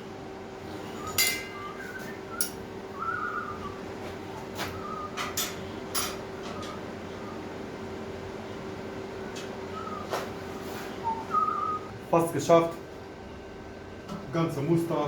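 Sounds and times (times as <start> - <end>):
steady hum: 0.0 - 15.0
short whistled notes: 0.8 - 3.8, 4.6 - 5.7, 9.6 - 11.9.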